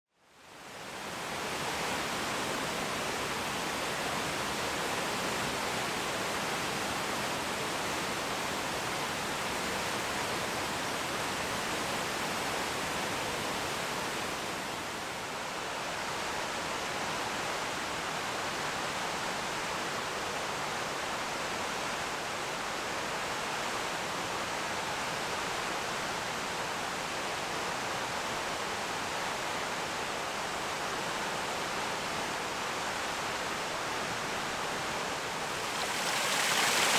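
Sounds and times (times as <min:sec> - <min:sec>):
waterfall rushing: 0:35.1 - 0:36.9.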